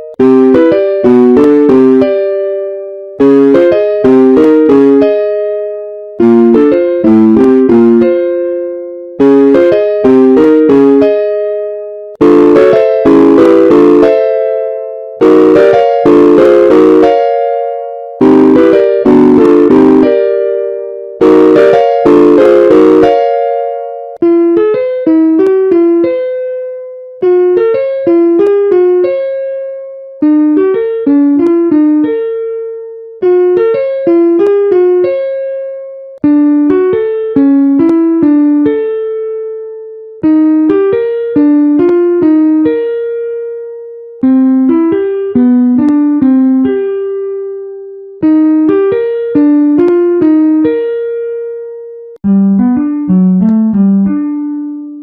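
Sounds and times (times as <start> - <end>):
electric piano phrase: 0.0 - 55.0.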